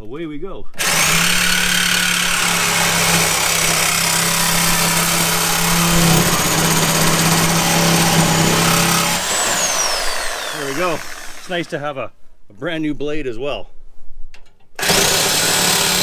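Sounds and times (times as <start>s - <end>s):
reciprocating saw cutting metal: 0.8s - 11.7s, 14.8s - 16.0s.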